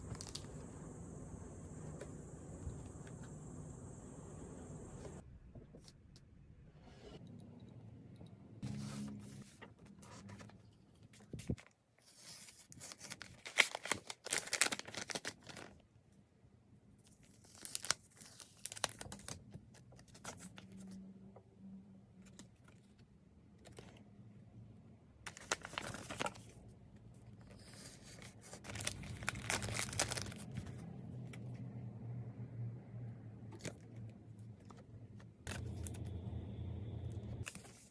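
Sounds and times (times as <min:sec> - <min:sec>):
plastic wrapping crinkling: 0:12.8 - 0:15.8, 0:28.4 - 0:30.7
packaging being torn open: 0:13.0 - 0:15.7, 0:28.6 - 0:30.5.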